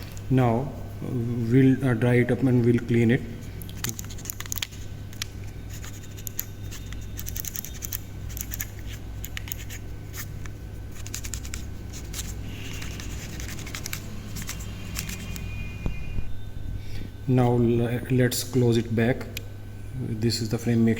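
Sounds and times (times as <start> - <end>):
scratchy rubbing and ticks: 3.8 - 15.6.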